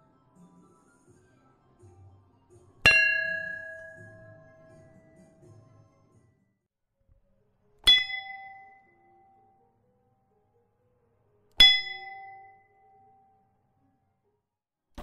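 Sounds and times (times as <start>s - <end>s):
bell ringing: 2.9s - 5.3s.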